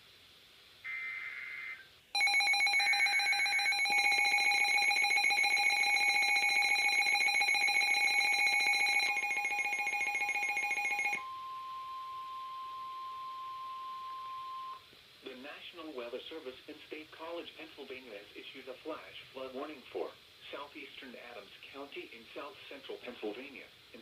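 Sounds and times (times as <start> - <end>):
steady high warning tone: 0.9 - 14.8
pulsing ringing alert tone: 2.2 - 11.9.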